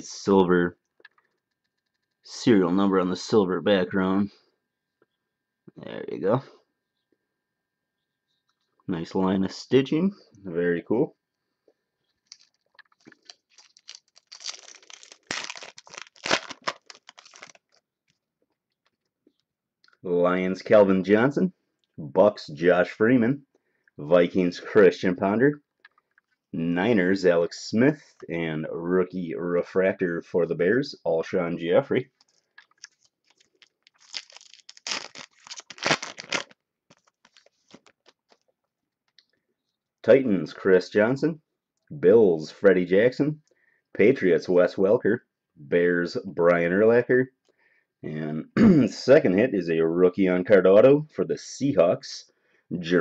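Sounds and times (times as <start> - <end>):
wrapper tearing and crinkling: 12.2 - 17.8, 32.2 - 38.5.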